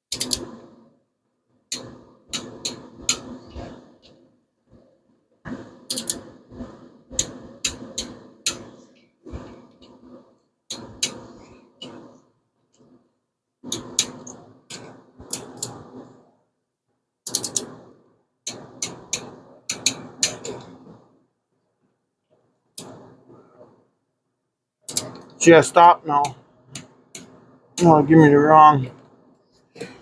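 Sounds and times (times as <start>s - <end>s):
torque wrench clicking: 0.1s - 0.5s, 5.9s - 6.2s, 17.3s - 17.7s.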